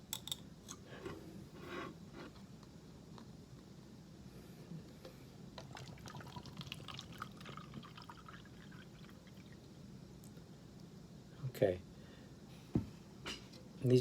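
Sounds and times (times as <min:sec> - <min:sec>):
liquid pouring into cup: 0:05.6 - 0:09.7.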